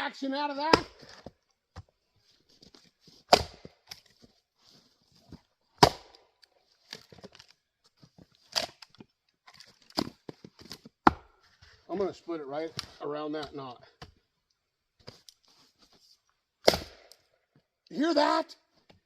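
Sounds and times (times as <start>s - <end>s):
axe chopping firewood: 0.6s - 1.3s, 3.3s - 4.2s, 5.8s - 6.4s, 10.0s - 11.4s, 16.6s - 17.3s.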